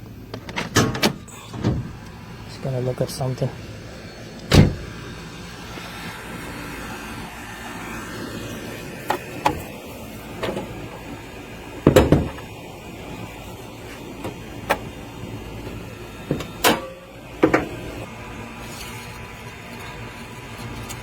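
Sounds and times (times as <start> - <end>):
knocks and clicks of handling: 11.8 - 12.5, 15.6 - 17.8.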